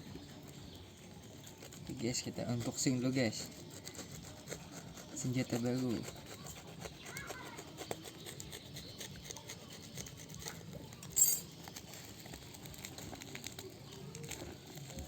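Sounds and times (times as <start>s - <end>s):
plastic packaging clicking and rustling: 10.6s - 15.0s.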